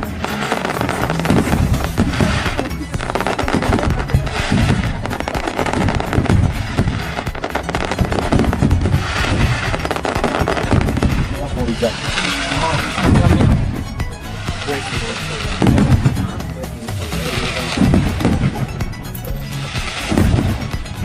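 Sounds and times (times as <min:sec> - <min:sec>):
fireworks bangs and crackling: 0:00.0 - 0:21.0
music: 0:00.0 - 0:21.0.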